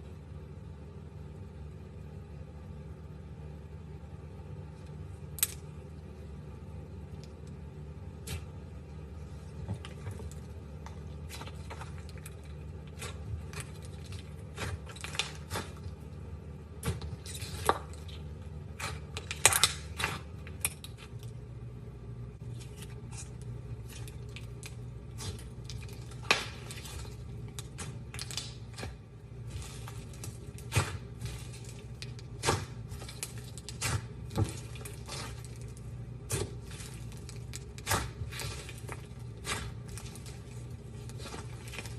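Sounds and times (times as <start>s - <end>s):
steady low hum: 0.0s - 41.9s
slime squished by hand: 16.8s - 21.1s, 22.4s - 41.9s.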